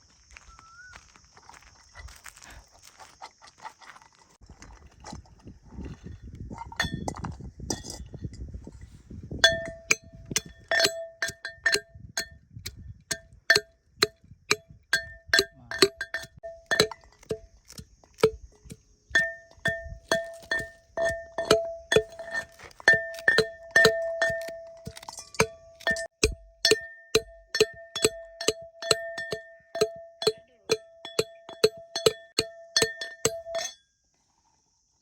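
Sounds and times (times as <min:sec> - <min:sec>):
low rumbling handling noise: 0:05.0 - 0:30.0
sharp metallic clinks: 0:09.4 - 0:33.8.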